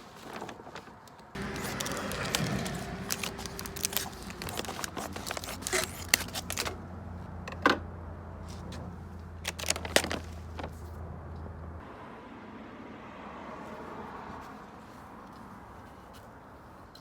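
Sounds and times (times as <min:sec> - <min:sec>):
scraping and rustling: 0:00.0 - 0:06.8, 0:08.4 - 0:11.0
objects clicking and knocking: 0:01.4 - 0:06.8, 0:09.4 - 0:10.8.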